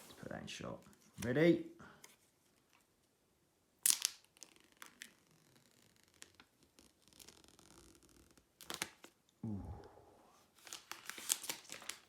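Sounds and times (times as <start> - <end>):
paper strip tearing: 3.8 - 9.1
paper and cardboard rustling: 10.6 - 12.0.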